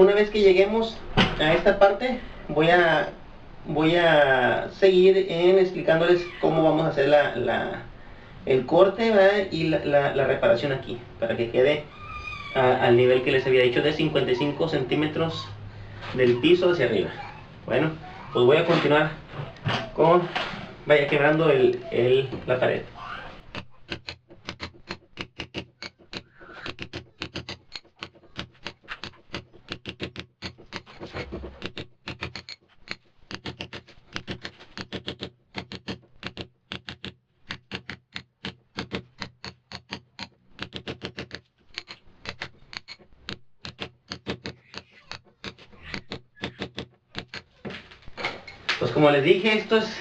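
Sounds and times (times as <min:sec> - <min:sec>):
mallet striking chisel into masonry: 0:23.4 - 0:47.5.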